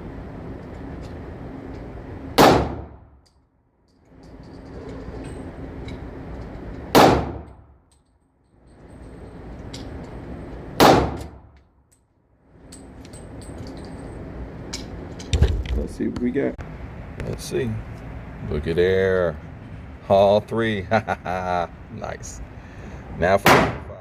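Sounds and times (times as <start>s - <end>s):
gunshots with ringing tail: 2.4s - 3.0s, 6.9s - 7.6s, 10.8s - 11.4s, 23.4s - 23.9s
steady background hiss: 12.6s - 24.0s.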